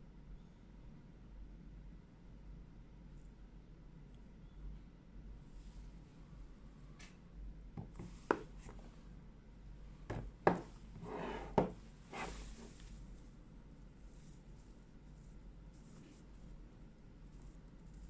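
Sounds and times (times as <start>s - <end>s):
taps on a cardboard box: 7.8s - 8.5s, 10.1s - 10.7s.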